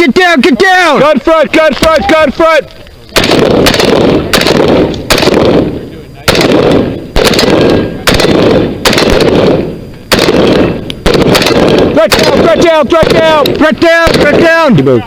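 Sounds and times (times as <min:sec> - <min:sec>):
rifle shots: 0:03.2 - 0:14.8.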